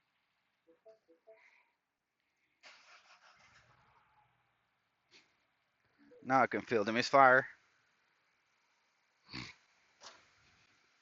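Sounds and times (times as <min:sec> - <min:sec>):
quiet electronic beeps: 0:00.6 - 0:01.6, 0:05.9 - 0:06.5.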